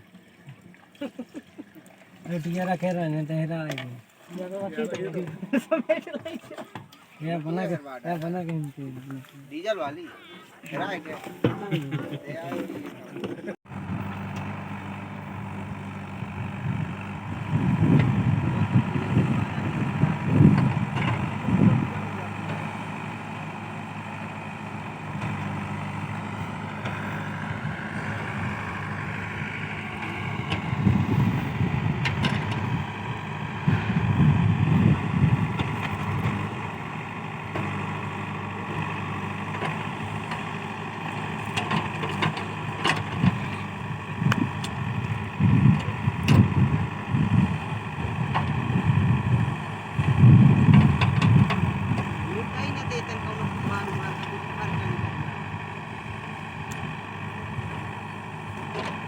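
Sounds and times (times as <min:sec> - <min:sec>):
diesel engine running: 0:13.2 - 0:59.0.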